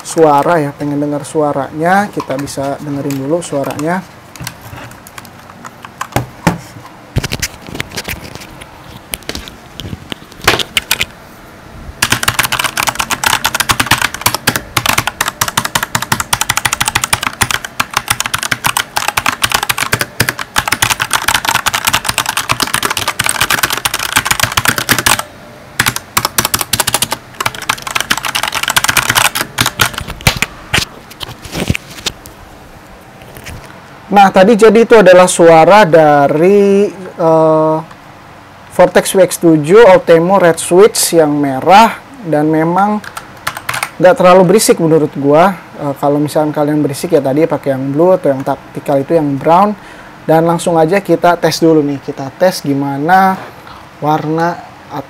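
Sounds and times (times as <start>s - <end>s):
mechanical keyboard typing: 2.2s - 6.3s, 12.0s - 30.5s, 43.0s - 44.0s.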